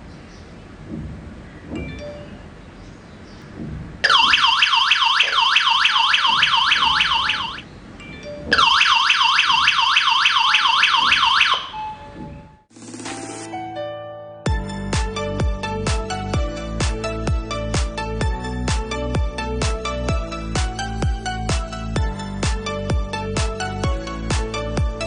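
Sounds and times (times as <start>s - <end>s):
alarm siren wailing: 4.0s - 7.7s, 8.4s - 12.7s.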